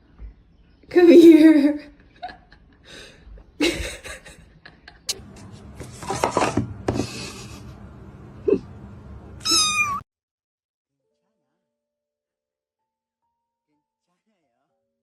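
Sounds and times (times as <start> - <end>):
bumps and rustling: 5.2 - 7.9
cat meowing: 9.4 - 10.0.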